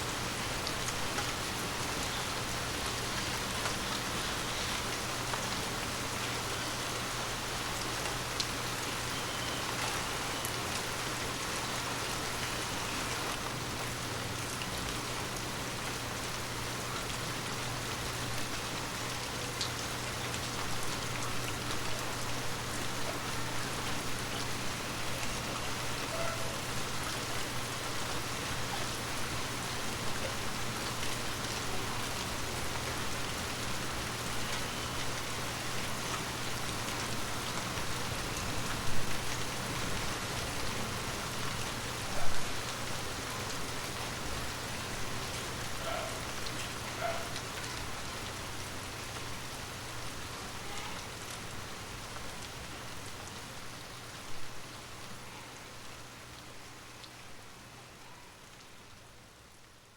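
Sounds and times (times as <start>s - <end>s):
rain on leaves: 0.0s - 59.9s.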